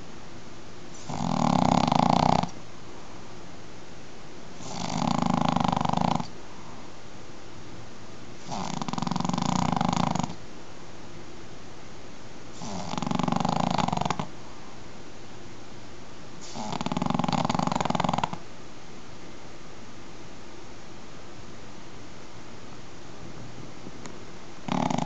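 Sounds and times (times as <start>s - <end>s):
faint steady hiss: 0.0s - 25.0s
person snoring: 1.0s - 2.5s, 4.6s - 6.3s, 8.4s - 10.4s, 12.6s - 14.3s, 16.4s - 18.4s, 24.7s - 25.0s.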